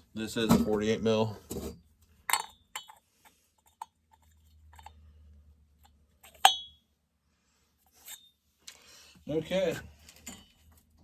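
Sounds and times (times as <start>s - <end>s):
sharp metallic clink: 6.4s - 6.8s.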